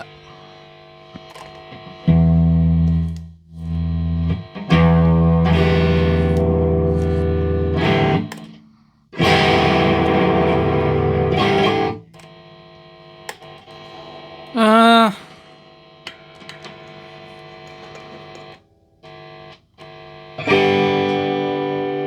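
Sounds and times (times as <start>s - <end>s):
electric guitar strummed chords: 9.2s - 12.0s, 20.4s - 22.0s.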